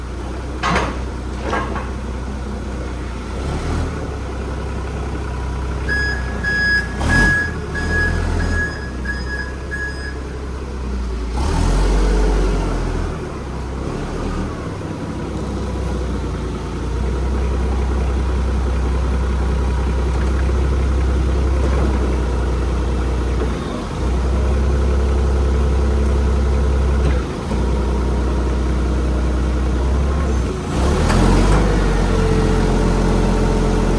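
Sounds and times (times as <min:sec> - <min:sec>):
heavy equipment engine running: 0:00.0 - 0:33.9
reversing alarm beeping: 0:05.9 - 0:10.5.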